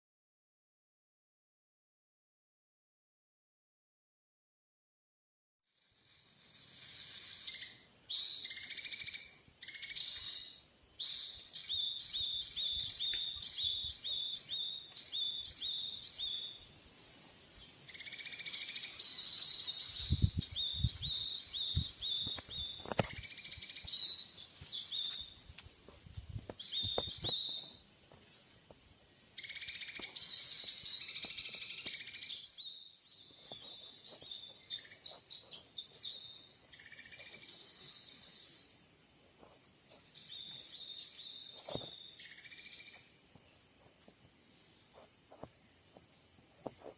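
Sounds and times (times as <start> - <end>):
bird chirping: 5.7 - 16.8, 17.5 - 25.6, 26.4 - 46.9.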